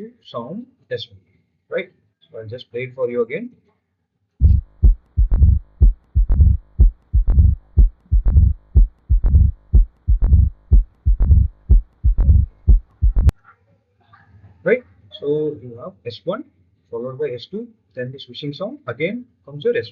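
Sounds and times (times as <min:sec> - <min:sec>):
heartbeat: 0:04.4 - 0:13.3
swishing heart murmur: 0:04.4 - 0:13.3.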